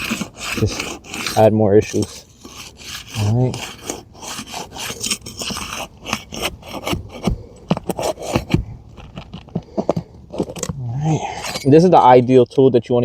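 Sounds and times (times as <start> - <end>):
metal pry tool scraping shingles: 0.0 - 12.3
short knocks: 6.4 - 10.1.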